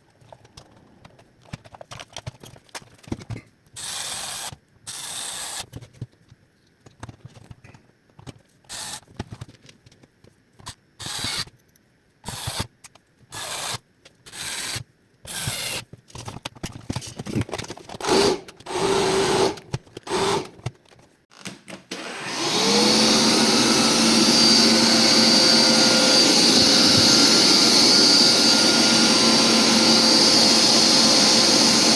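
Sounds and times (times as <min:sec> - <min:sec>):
vacuum cleaner motor running: 0:21.9 - 0:31.9.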